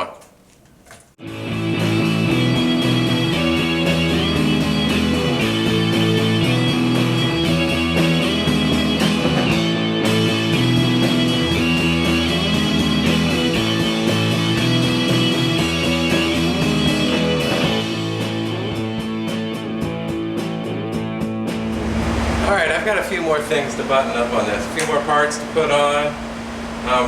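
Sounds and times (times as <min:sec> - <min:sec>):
rock music with electric guitar: 0:01.2 - 0:21.6.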